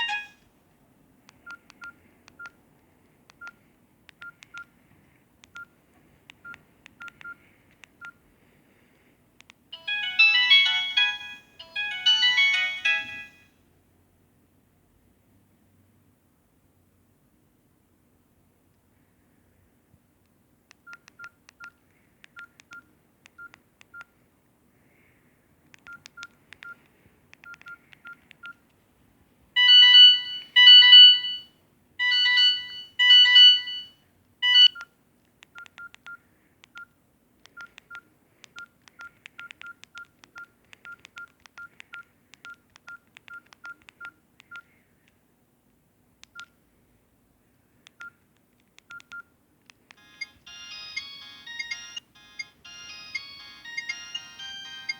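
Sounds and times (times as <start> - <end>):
phone keypad beeps: 0.0 - 0.4, 1.4 - 2.6, 3.4 - 3.6, 4.2 - 4.7, 6.4 - 7.4, 20.9 - 24.1, 25.8 - 26.8, 27.4 - 28.6, 29.6 - 34.9, 35.6 - 44.7, 46.2 - 46.6, 48.8 - 49.3, 49.9 - 54.9.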